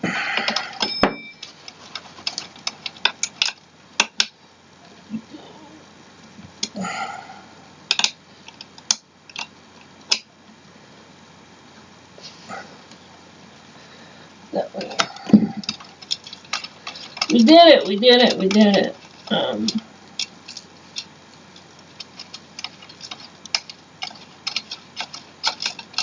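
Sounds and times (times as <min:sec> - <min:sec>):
metal hardware clicking and knocking: 0:22.0 - 0:26.0.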